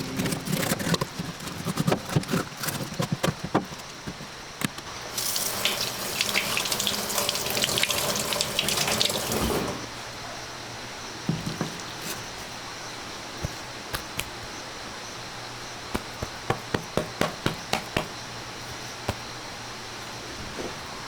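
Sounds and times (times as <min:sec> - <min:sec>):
running water rushing: 0:05.0 - 0:09.9.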